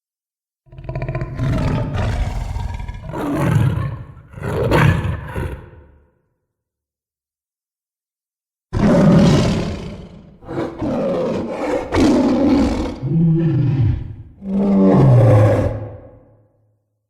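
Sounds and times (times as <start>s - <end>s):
monster roaring and growling: 8.8s - 16.2s.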